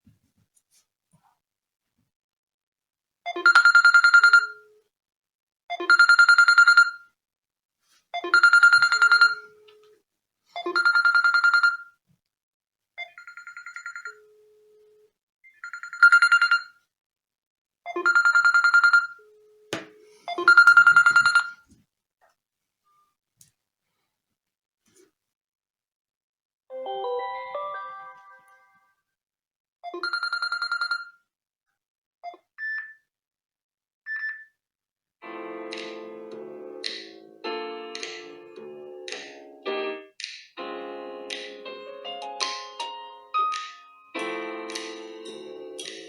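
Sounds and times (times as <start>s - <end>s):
trilling phone ringtone: 3.3s - 4.7s, 5.8s - 7.0s, 8.2s - 9.6s, 10.7s - 11.9s, 13.1s - 14.2s, 15.6s - 16.7s, 17.9s - 19.2s, 20.3s - 21.6s, 30.0s - 31.2s.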